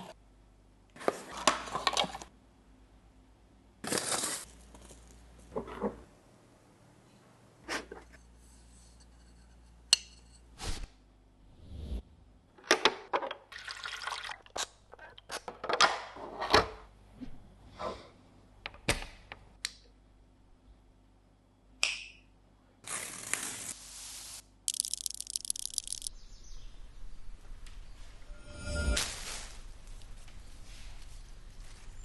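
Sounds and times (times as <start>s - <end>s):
water pouring: 13.5s - 14.5s.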